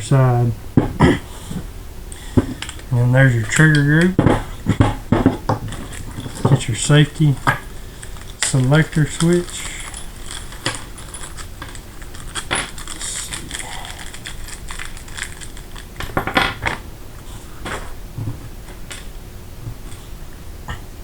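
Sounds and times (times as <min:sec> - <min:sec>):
small metal parts clicking and rattling: 0:02.1 - 0:16.8
metal parts clattering: 0:02.2 - 0:16.9.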